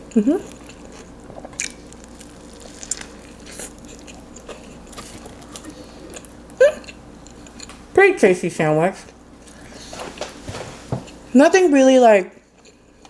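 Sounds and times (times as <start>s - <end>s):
close chewing crunches: 0.1s - 7.8s.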